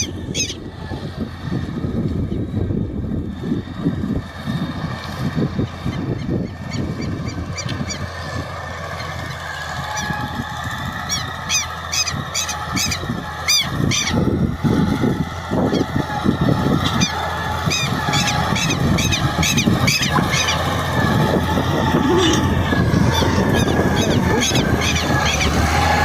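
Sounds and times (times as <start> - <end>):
bird giving sharp calls: 0.0 - 0.6, 11.0 - 14.2, 16.8 - 21.1, 21.8 - 26.0
wind on microphone: 0.0 - 8.6, 12.1 - 26.0
tractor engine running: 0.0 - 26.0.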